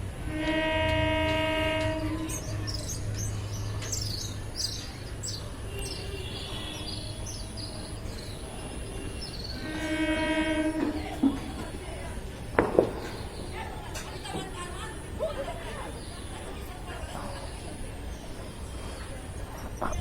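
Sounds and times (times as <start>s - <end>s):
birds chirping: 1.8s - 11.1s, 12.7s - 14.3s.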